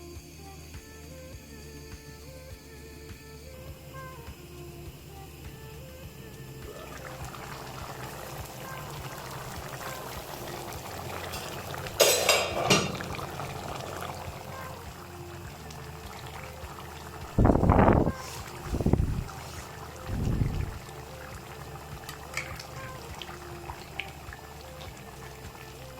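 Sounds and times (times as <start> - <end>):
liquid bubbling in pan: 4.9 - 25.9
liquid pouring into pan: 6.6 - 25.9.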